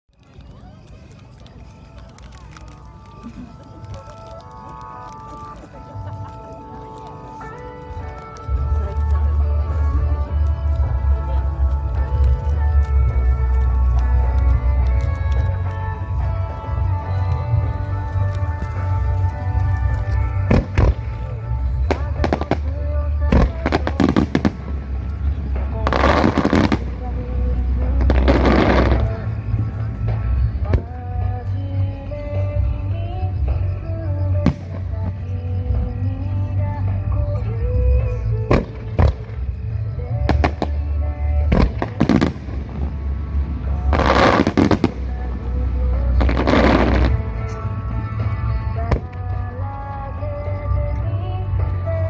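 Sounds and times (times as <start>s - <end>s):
music: 0.1s - 52.0s
firework crackling: 0.2s - 35.4s, 37.5s - 49.4s
fireworks bangs: 41.5s - 45.3s.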